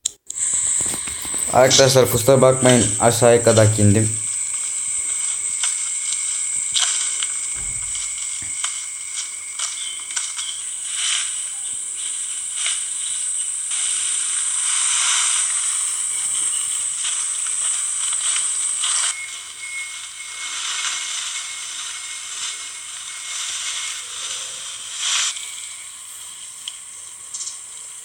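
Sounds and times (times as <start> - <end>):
insects chirring: 0.3 - 28.0
dull thud: 7.4 - 8.6.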